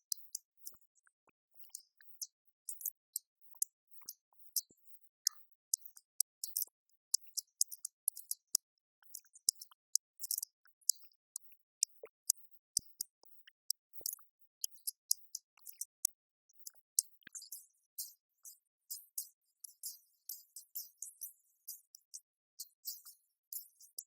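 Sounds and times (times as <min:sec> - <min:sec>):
light high-pitched clicks: 0:05.3 - 0:24.0.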